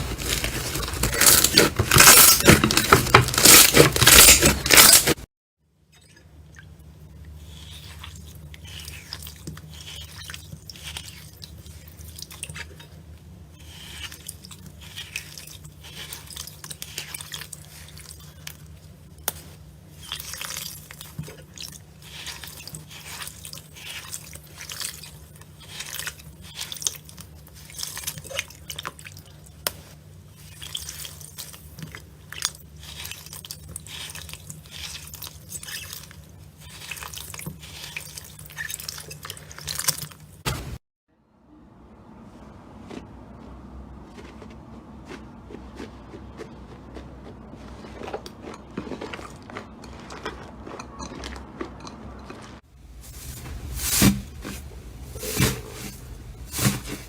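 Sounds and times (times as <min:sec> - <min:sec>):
slime squelching by hand: 0:00.0 - 0:05.2, 0:07.3 - 0:12.8, 0:42.8 - 0:57.0
steady low hum: 0:40.4 - 0:57.0.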